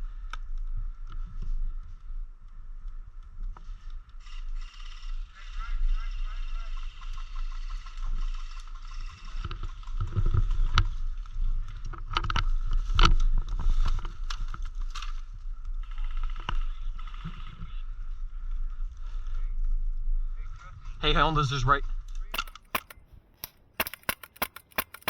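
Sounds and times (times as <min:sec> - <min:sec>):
low wind rumble: 0:05.0 - 0:23.8
sharp clicks and knocks: 0:22.3 - 0:25.0.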